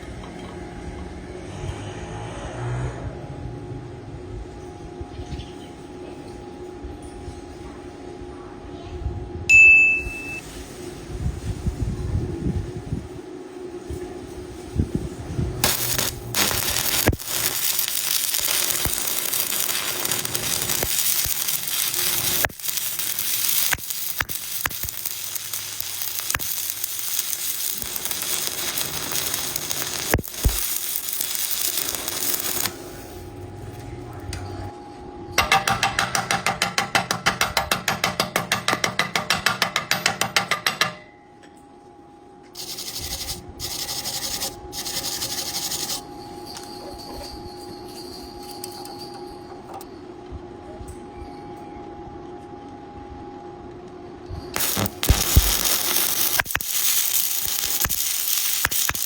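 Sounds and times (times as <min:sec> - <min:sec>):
welding arc crackling: 0:15.6 - 0:33.6, 0:42.6 - 0:46.0, 0:54.6 - 0:59.0.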